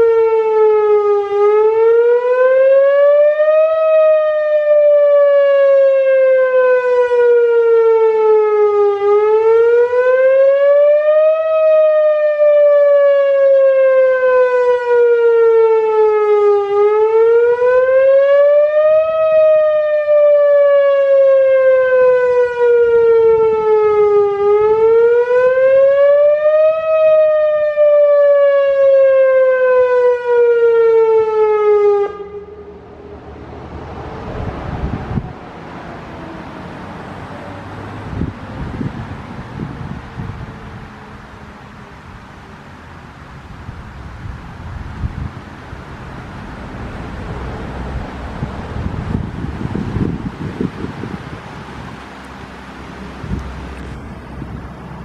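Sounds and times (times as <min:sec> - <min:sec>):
warning siren wail: 0:00.0 - 0:55.0
wind noise: 0:32.8 - 0:55.0.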